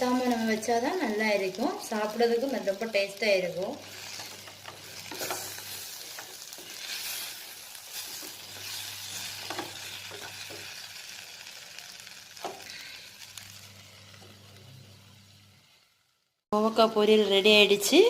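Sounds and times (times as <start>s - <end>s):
vegetables sizzling in oil: 0.0s - 18.0s
spatula scraping pan: 3.8s - 10.8s.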